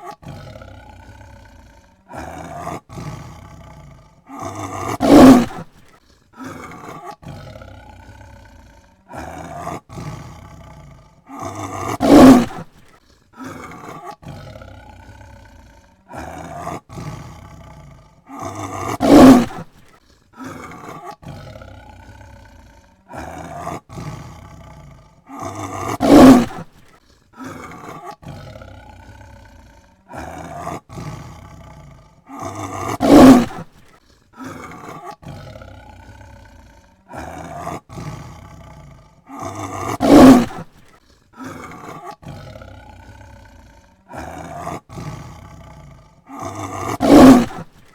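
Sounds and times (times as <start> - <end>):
tiger calls: 0.0 - 5.7, 6.4 - 12.7, 13.4 - 19.7, 20.4 - 26.7, 30.2 - 33.7, 37.2 - 40.7, 41.5 - 47.7
tiger roaring: 0.0 - 47.9.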